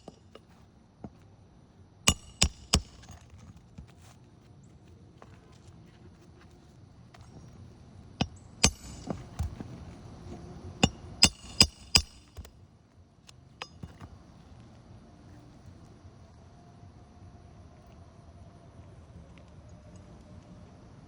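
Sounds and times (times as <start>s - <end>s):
metal tools striking shingle roof: 0.0s - 0.4s, 2.1s - 3.5s, 8.2s - 9.7s, 10.8s - 12.5s, 13.6s - 14.1s.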